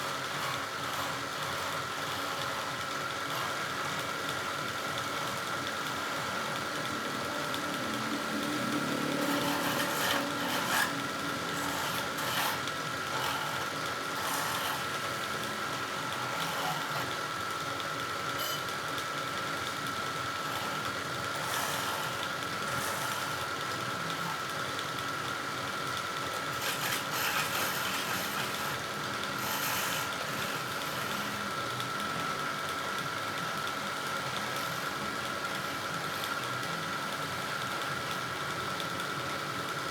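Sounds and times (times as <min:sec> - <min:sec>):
turning tool scraping wood: 0:00.0 - 0:04.3, 0:08.5 - 0:17.2, 0:18.3 - 0:18.7, 0:20.4 - 0:24.8, 0:26.2 - 0:31.5
wood lathe motor whine: 0:00.0 - 0:39.9.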